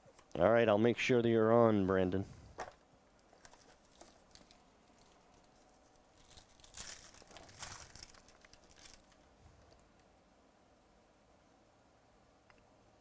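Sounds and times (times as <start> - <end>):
card packaging crinkling and tearing: 3.3 - 9.3.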